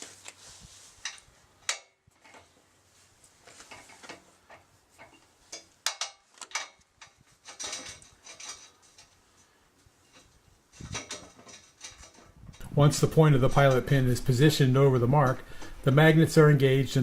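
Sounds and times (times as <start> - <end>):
metal clicks and rattles: 3.4 - 9.4, 10.1 - 12.8.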